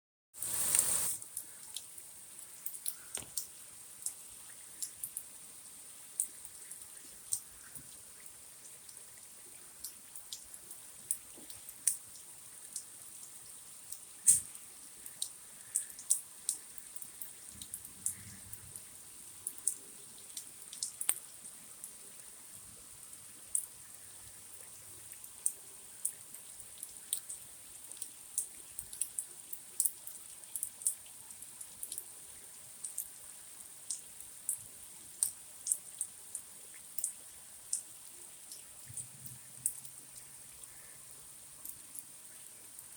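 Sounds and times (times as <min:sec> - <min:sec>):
heavy rain hissing: 0:00.4 - 0:01.4
water drips ticking: 0:00.4 - 0:42.9.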